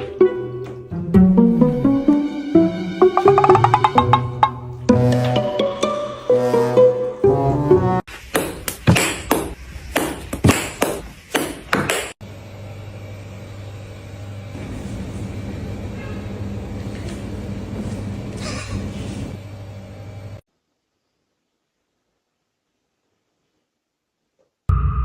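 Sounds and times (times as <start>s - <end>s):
sharp knocks: 3.1s - 4.7s.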